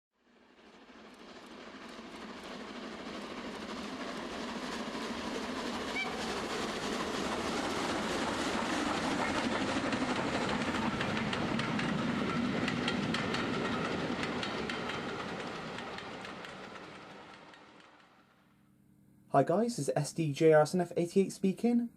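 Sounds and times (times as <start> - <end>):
train wheels rattling on rails: 0.3 - 18.5.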